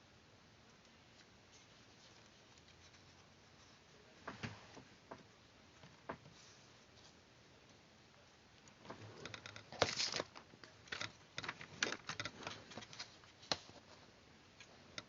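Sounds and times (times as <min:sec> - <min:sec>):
paper rustling: 0:08.9 - 0:14.0.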